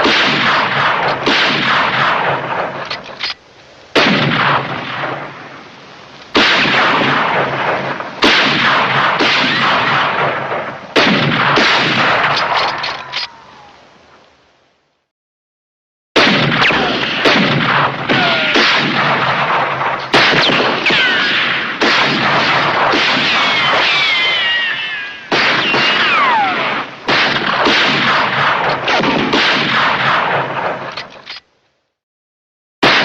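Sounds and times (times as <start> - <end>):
rapid gunfire: 0.0 - 2.8, 4.0 - 5.2, 6.4 - 12.4, 16.2 - 24.4, 25.3 - 30.9
ricochet whines: 11.6 - 13.4, 23.2 - 29.2.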